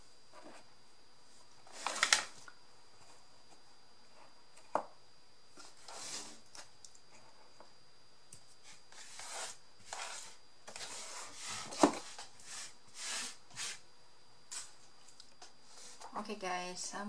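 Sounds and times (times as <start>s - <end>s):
hands rubbing craft materials: 8.6s - 13.8s.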